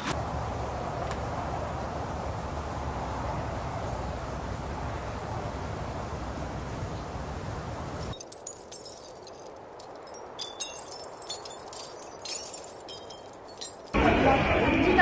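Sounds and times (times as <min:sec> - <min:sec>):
high-pitched tinkling chimes: 0:08.0 - 0:14.0.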